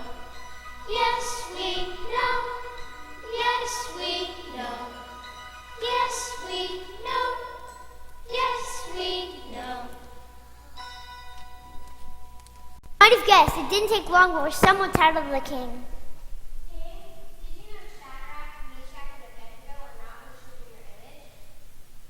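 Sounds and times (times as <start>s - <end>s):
background music with jingling percussion: 0.0s - 12.8s.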